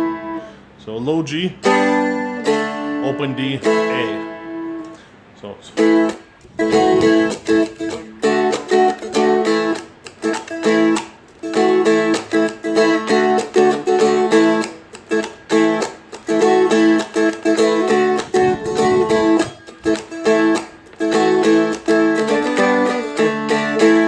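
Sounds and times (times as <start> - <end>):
small string instrument strummed: 0.0 - 0.6, 1.6 - 5.1, 5.7 - 24.0.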